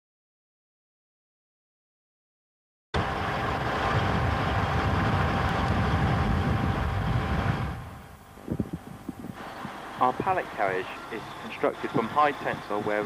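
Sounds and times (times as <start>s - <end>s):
loading machine engine rumbling: 3.0s - 13.0s.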